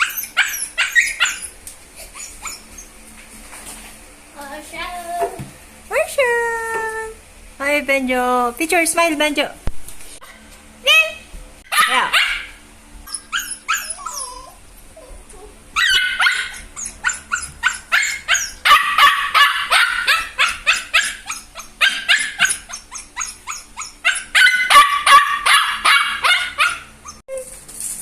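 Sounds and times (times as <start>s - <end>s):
puppy yipping and whining: 0.0s - 3.0s, 11.7s - 27.6s.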